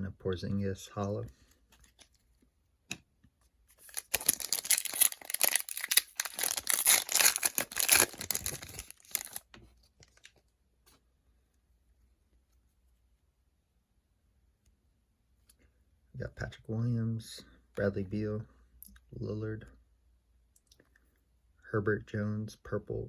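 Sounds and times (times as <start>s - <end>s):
foil wrapper tearing and crinkling: 3.8s - 9.4s.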